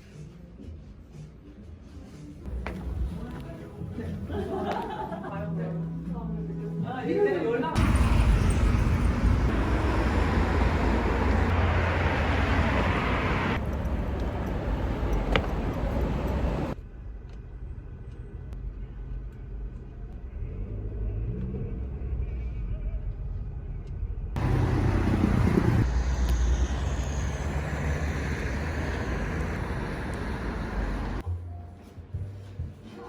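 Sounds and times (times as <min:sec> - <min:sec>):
road traffic rumble: 0:07.8 - 0:16.8, 0:24.4 - 0:31.2.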